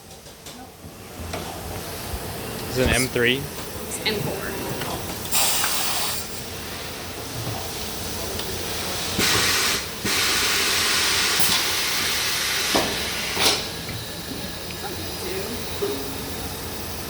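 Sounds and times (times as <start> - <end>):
compressed air hissing: 5.3 - 7.1, 8.6 - 13.8.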